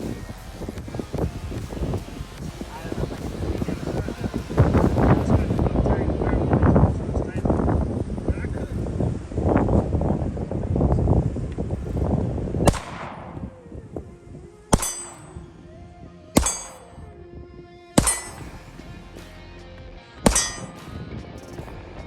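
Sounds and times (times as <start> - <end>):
bullets hitting steel targets: 14.7 - 15.5, 16.4 - 17.1, 18.0 - 18.6, 20.3 - 20.9.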